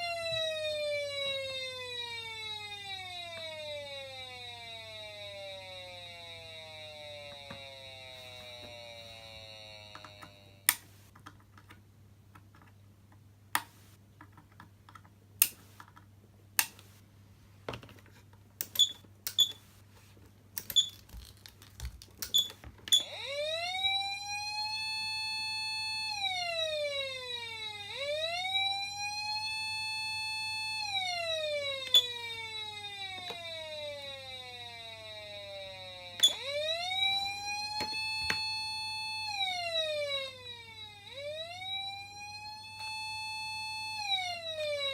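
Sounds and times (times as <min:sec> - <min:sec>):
siren wail tone: 0:00.0 - 0:10.8, 0:22.3 - 0:44.9
siren tone winding down: 0:00.0 - 0:10.9, 0:22.3 - 0:44.9.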